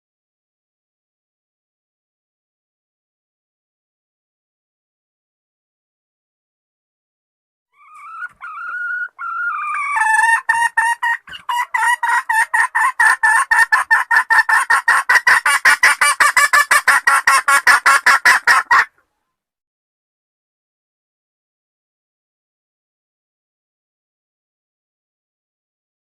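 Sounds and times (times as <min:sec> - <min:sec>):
hen calling and clucking: 0:07.8 - 0:19.4.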